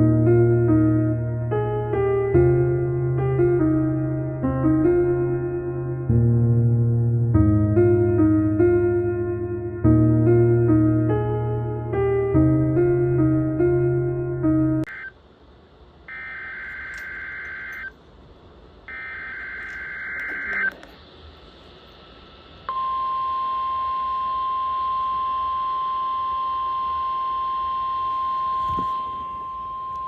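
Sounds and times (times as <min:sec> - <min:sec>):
piano music: 0:00.0 - 0:14.9
steady warning alarm tone: 0:14.9 - 0:15.2, 0:16.1 - 0:18.0, 0:18.9 - 0:20.9, 0:22.7 - 0:30.0
buzzy alert data bursts: 0:16.1 - 0:17.9, 0:18.9 - 0:20.8.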